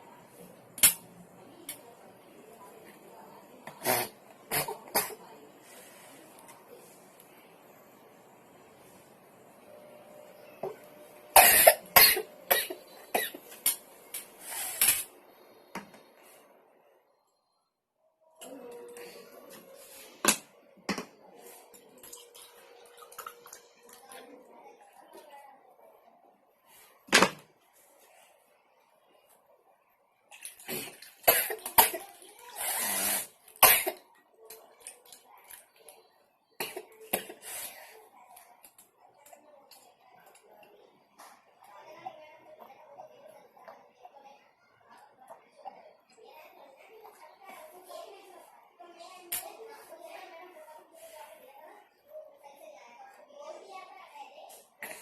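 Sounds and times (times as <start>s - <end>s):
woman coughing and gulping: 3.8s - 5.2s, 11.3s - 13.6s, 30.7s - 32.1s, 33.6s - 34.1s, 36.6s - 37.4s, 54.8s - 55.0s
woman coughing: 11.4s - 13.4s.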